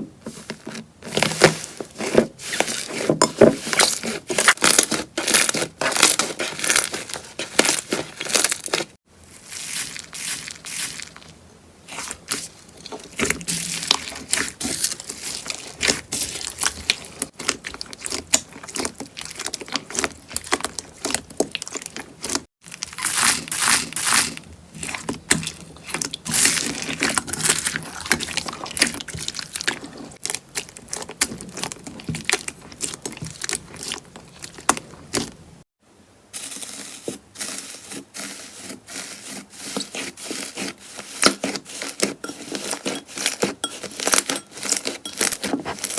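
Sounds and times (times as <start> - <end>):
slime crackling and popping: 3.6 - 8.9, 11.9 - 35.4.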